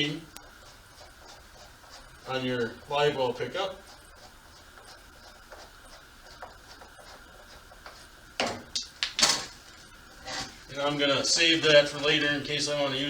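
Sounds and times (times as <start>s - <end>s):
faint steady hiss: 0.0s - 13.0s
noisy scrapes: 9.4s - 12.8s.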